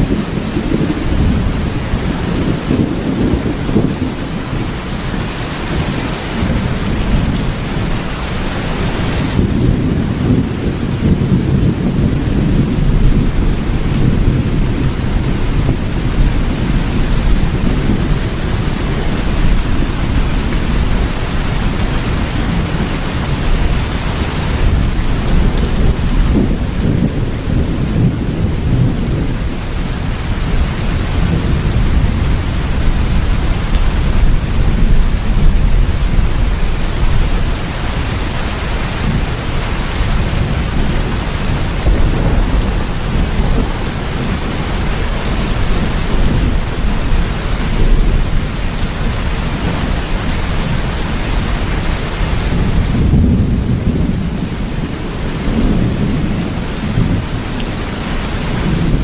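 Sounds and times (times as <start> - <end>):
deep rumble of thunder: 0.0 - 59.0
steady rain: 0.0 - 59.0.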